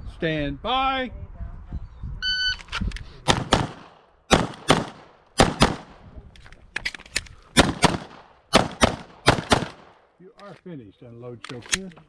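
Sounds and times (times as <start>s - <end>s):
fainter quick gunshots: 3.3s - 6.0s
pistol shots: 3.3s - 6.0s, 7.6s - 10.0s.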